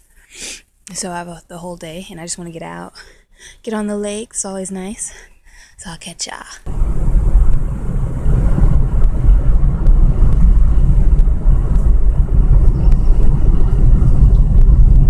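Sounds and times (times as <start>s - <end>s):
car engine and road rumble: 6.7s - 15.0s.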